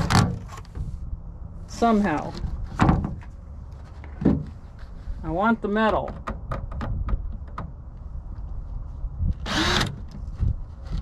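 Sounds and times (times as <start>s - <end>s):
wind buffeting microphone: 6.4s - 11.0s.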